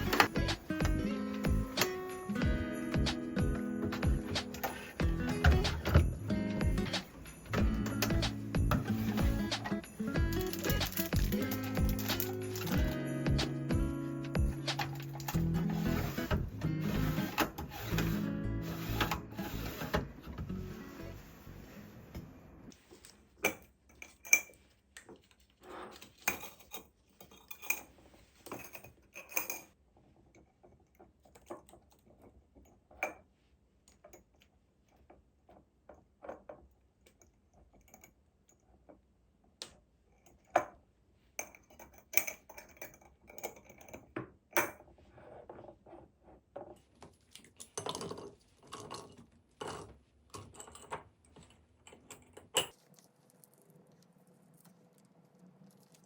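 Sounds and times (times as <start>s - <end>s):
containers clinking and knocking: 3.4s - 18.2s.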